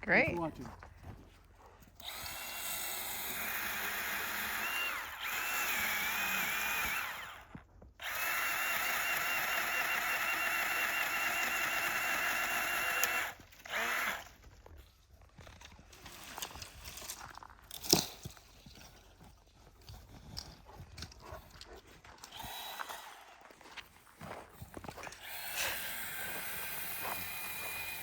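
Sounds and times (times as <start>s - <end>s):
battery chainsaw motor whine: 2.0s - 14.4s, 22.2s - 23.6s, 24.8s - 28.0s.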